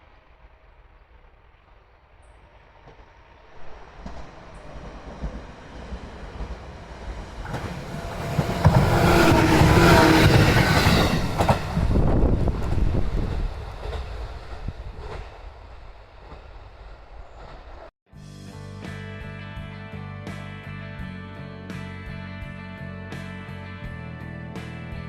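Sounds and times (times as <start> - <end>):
train whine: 0.0 - 17.9
train wheels clattering on rails: 1.8 - 17.9.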